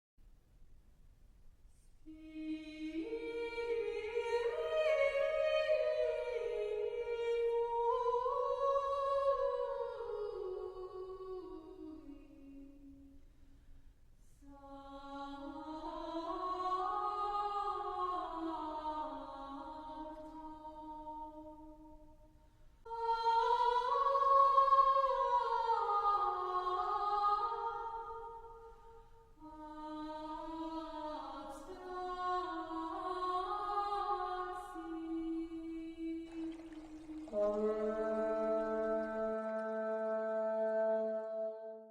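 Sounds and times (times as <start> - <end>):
slow chant-like music: 2.0 - 13.4, 14.3 - 41.9
person singing wordless melody: 2.1 - 13.2, 29.4 - 41.9.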